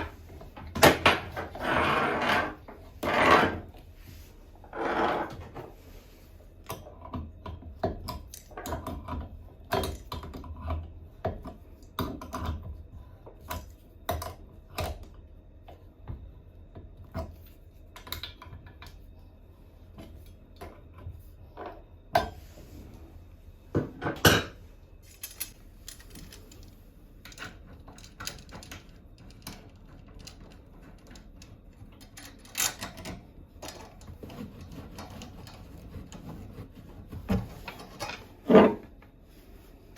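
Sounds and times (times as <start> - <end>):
hand tools clinking: 25.0 - 26.6.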